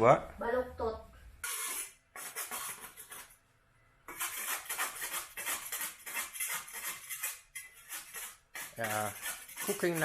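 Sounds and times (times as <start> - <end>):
knife scraping a hard surface: 1.4 - 3.4, 4.1 - 10.0.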